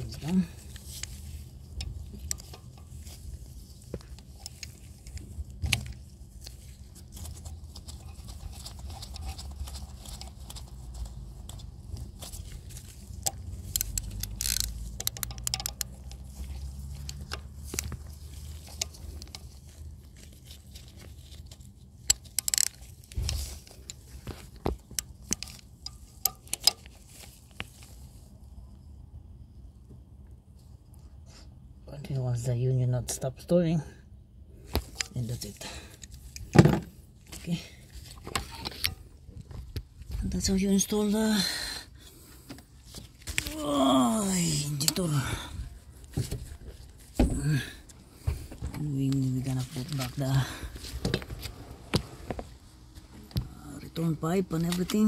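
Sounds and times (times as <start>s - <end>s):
low steady hum: 0.0s - 55.0s
wrench clicking on metal: 13.2s - 16.2s.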